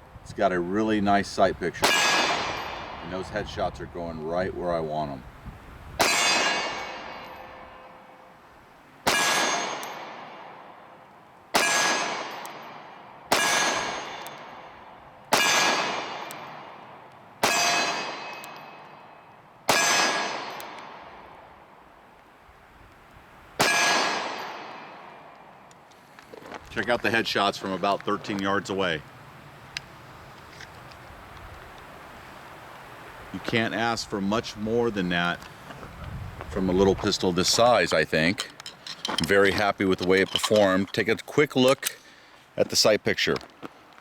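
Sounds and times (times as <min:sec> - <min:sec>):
pistol shots: 0:01.8 - 0:03.0, 0:06.0 - 0:07.3, 0:09.0 - 0:10.7, 0:11.5 - 0:14.7, 0:15.3 - 0:18.9, 0:19.7 - 0:21.4, 0:23.6 - 0:25.3.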